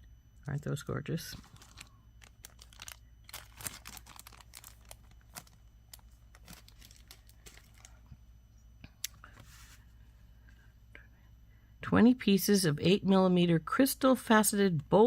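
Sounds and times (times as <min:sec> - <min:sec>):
plastic packaging crinkling: 0:01.3 - 0:08.1.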